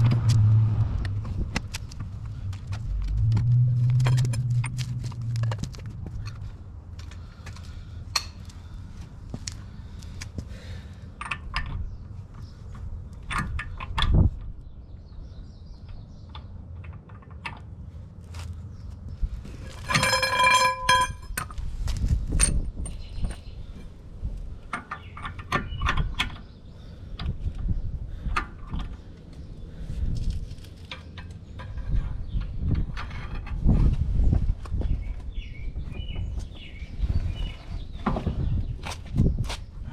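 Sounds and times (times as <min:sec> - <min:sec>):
hand tools clinking on metal: 0:19.7 - 0:21.5
ringing metallic clang: 0:19.8 - 0:21.4.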